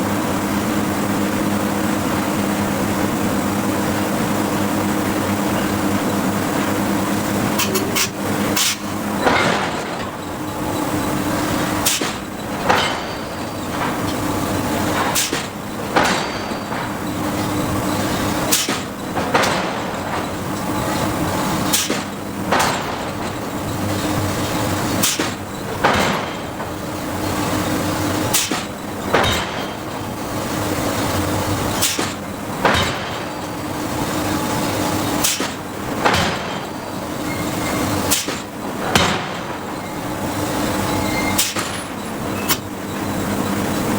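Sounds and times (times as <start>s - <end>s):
hydraulics humming: 0.0s - 43.9s
forging hammer striking steel: 11.5s - 23.9s, 28.3s - 30.0s, 31.8s - 33.5s.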